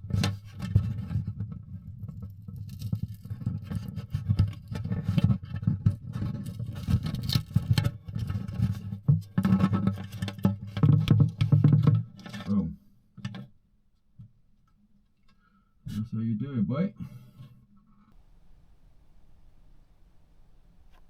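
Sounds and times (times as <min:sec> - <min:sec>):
low boomy resonance: 0:18.2 - 0:21.0.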